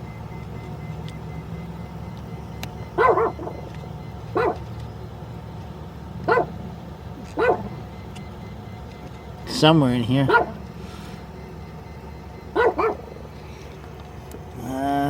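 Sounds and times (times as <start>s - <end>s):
tone tracer probe chirps: 0.0s - 5.1s, 7.2s - 13.8s
steady low hum: 0.0s - 15.0s.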